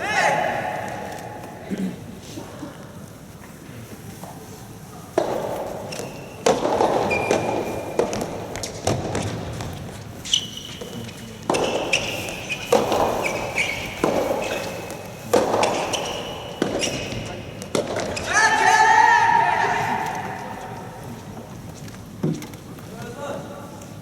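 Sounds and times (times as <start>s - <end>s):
shoes squeaking on court: 5.0s - 18.6s
tennis ball hit by rackets: 5.2s - 10.0s, 11.5s - 18.3s.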